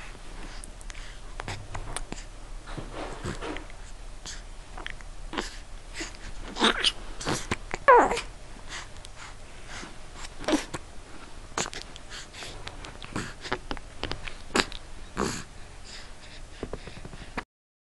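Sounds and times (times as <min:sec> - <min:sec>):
faint breathing: 0:00.0 - 0:04.6, 0:05.3 - 0:06.6, 0:08.6 - 0:13.6, 0:14.2 - 0:17.4.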